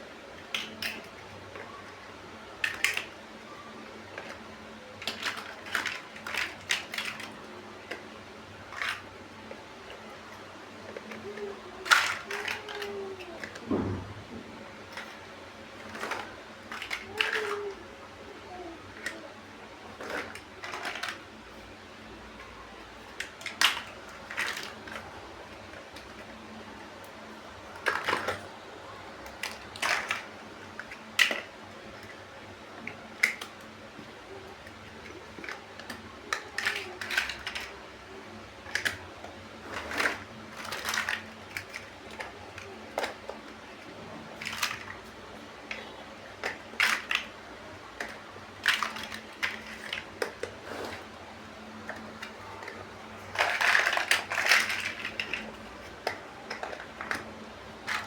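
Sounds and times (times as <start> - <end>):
plastic bricks clicking together: 0.4 - 1.8, 2.5 - 3.2, 4.0 - 14.2, 14.8 - 21.4, 23.0 - 28.5, 29.2 - 51.1, 51.7 - 58.0.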